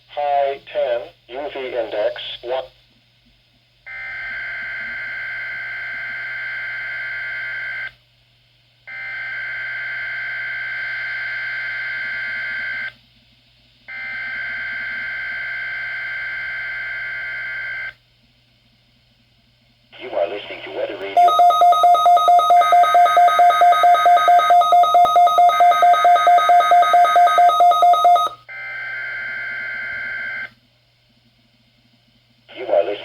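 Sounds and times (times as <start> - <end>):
buzzing digital data tone: 21.2 - 28.4.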